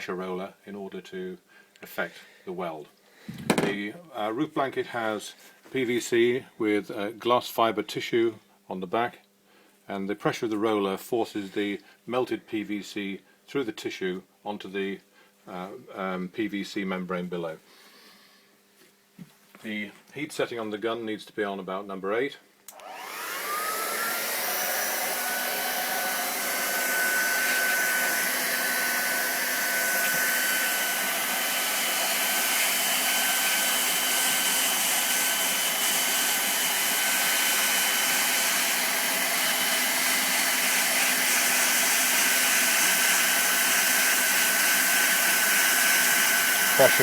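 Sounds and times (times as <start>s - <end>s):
hot-air welder blower hissing: 22.7s - 47.0s.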